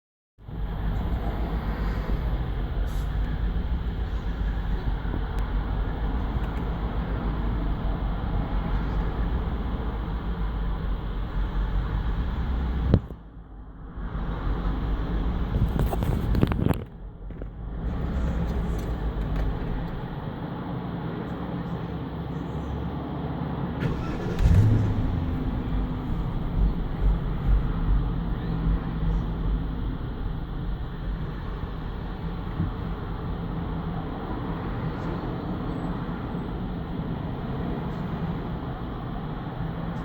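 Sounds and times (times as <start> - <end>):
car engine idling rough: 0.4 - 22.8, 23.6 - 40.0
engine restarting surge: 23.8 - 28.1.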